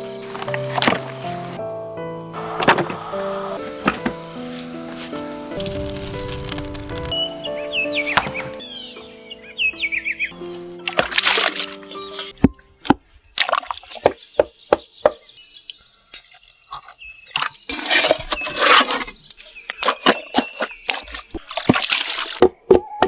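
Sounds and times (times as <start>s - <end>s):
liquid sloshing and splashing: 10.8s - 12.3s, 13.4s - 14.4s, 16.8s - 22.5s.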